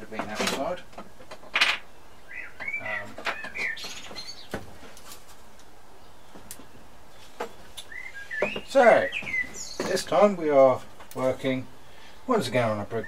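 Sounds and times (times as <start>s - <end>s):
bird chirping: 1.1s - 4.9s, 5.9s - 10.6s.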